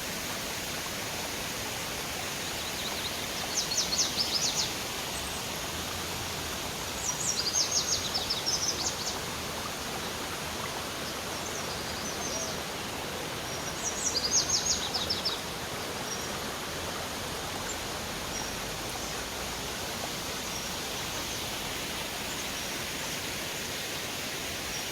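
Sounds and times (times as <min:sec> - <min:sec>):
waterfall rushing: 0:16.8 - 0:24.9.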